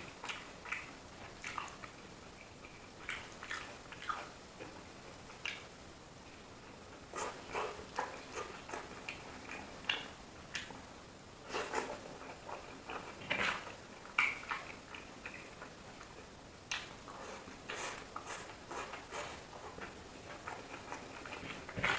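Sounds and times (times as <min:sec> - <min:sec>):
person chewing food: 0:00.0 - 0:05.7, 0:06.6 - 0:21.9.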